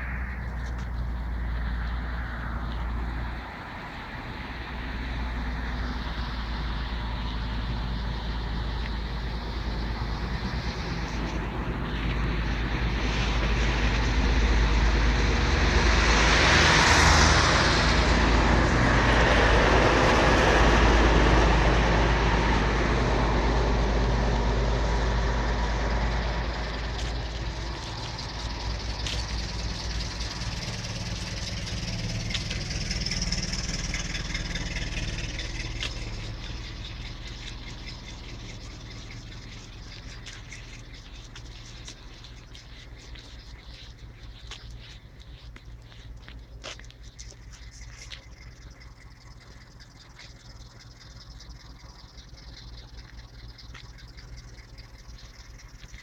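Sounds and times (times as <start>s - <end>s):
motor vehicle passing by: 0.0s - 56.0s
faint clicks: 25.6s - 56.0s.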